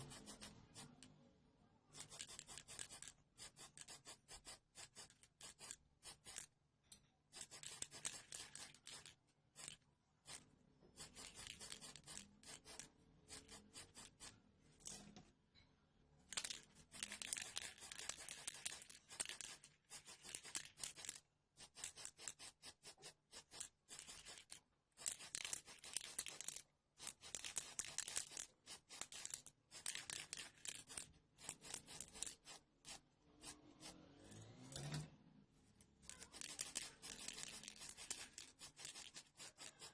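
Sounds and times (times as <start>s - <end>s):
scratchy scraping strokes: 16.3s - 35.1s, 36.0s - 39.9s.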